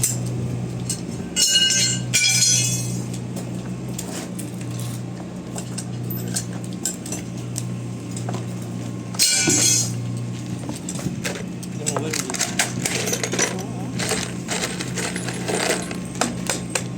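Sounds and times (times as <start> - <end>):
metallic clinks and rattles: 11.8 - 16.7.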